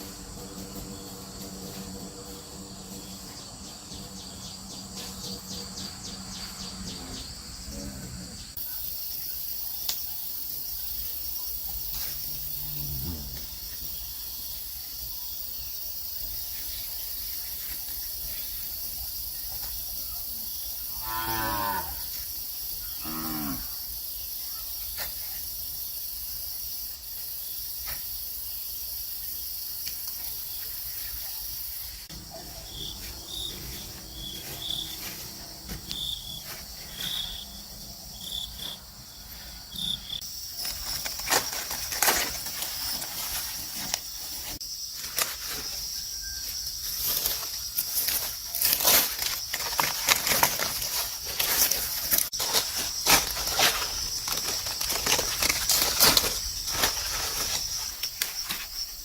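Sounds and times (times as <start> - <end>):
high-pitched insect chorus: 0.0 - 59.0
cattle mooing: 12.4 - 13.5, 21.0 - 22.0.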